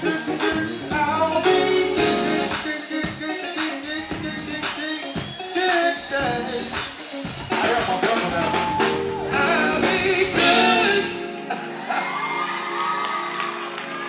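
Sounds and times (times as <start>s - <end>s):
live band playing: 0.0s - 12.2s
person singing: 0.0s - 13.0s.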